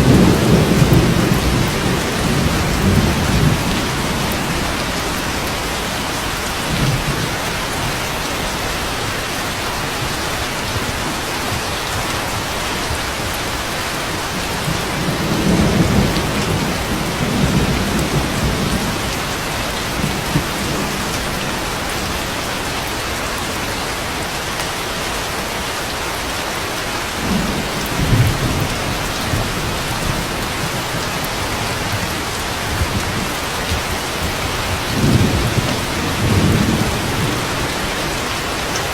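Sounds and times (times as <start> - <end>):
rolling thunder rumbles: 0.0 - 8.9, 14.2 - 22.7, 27.2 - 38.9
steady rain: 0.0 - 38.9.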